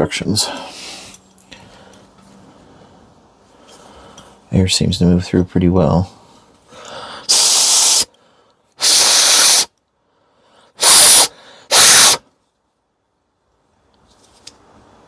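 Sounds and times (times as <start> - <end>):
hissing air blasts: 7.3 - 8.1, 8.8 - 9.7, 10.8 - 12.2.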